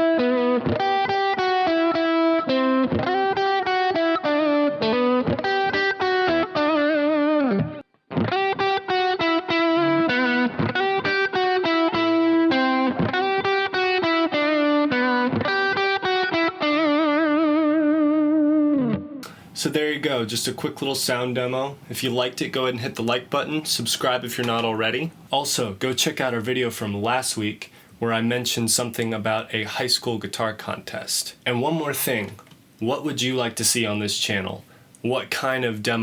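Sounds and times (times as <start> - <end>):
overdriven electric guitar lead: 0.0 - 19.4.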